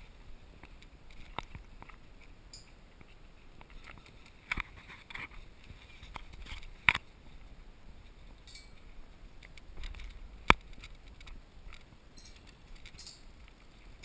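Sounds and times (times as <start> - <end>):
faint rustling: 0.0 - 14.0
small ticks: 9.4 - 14.0.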